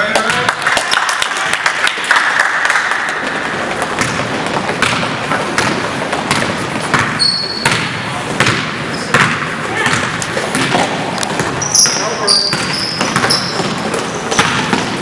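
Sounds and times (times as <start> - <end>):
basketball bouncing on floor: 3.7 - 15.0.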